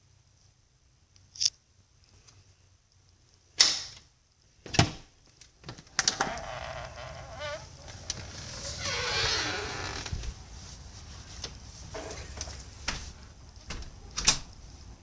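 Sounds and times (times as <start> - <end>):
shuffling noise: 7.6 - 15.0.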